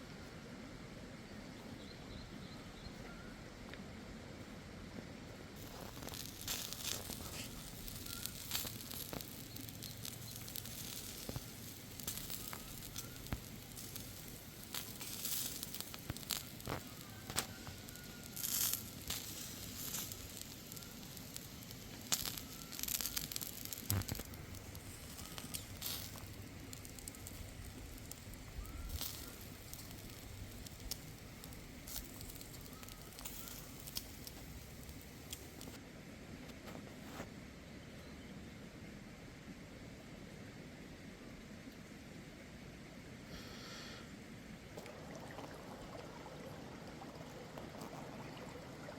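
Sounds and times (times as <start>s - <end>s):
sharp pops of fire: 5.6s - 35.8s
wood fire crackling: 5.6s - 35.8s, 44.7s - 48.9s.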